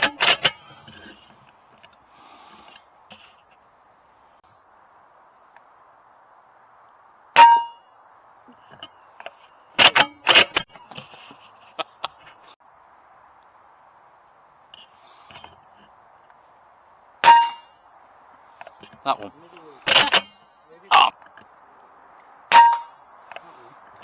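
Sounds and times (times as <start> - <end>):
clicks and knocks: 19.9 - 20.4.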